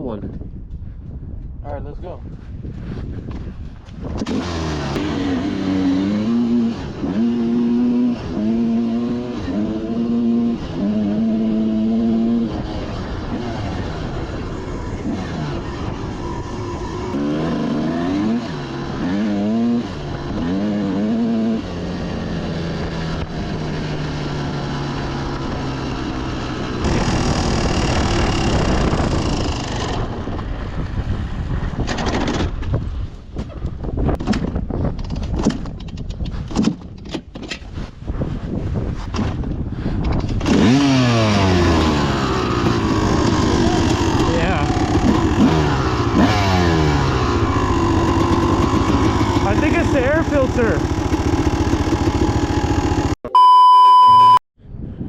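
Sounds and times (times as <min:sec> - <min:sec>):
dirt bike engine revving: 0:04.2 - 0:30.2, 0:40.4 - 0:53.2.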